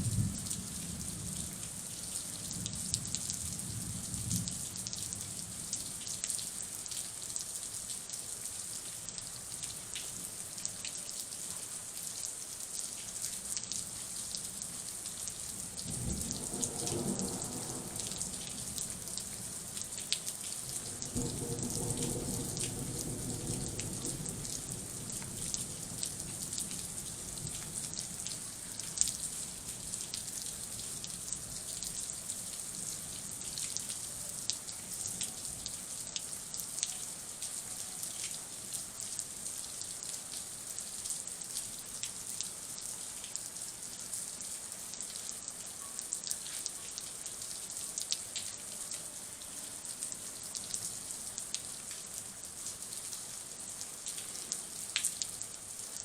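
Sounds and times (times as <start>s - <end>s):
heavy rain falling: 12.7s - 38.9s
low thunder rumble: 15.9s - 19.2s, 20.8s - 27.6s.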